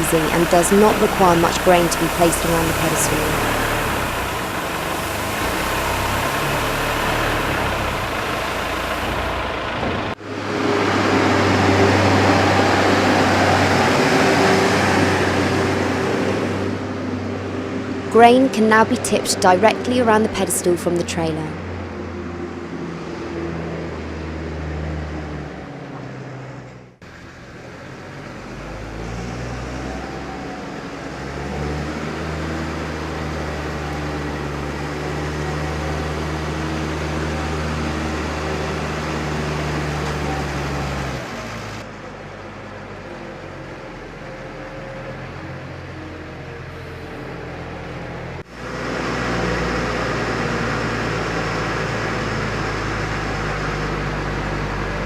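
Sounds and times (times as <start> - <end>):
tractor engine running: 0.0 - 22.1
grain pouring rushing hiss: 3.3 - 9.4.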